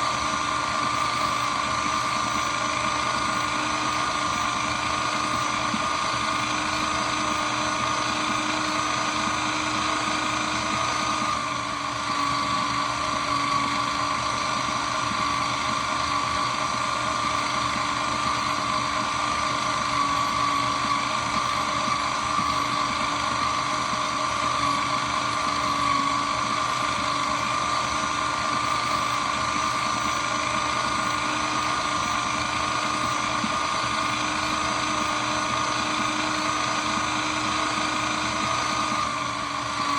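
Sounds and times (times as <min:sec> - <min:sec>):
shredder motor whining: 0:00.0 - 0:39.9.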